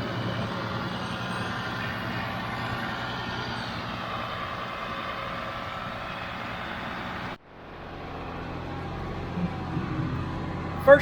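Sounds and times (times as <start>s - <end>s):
tractor diesel engine running: 0.0s - 11.0s
baler working: 8.0s - 11.0s.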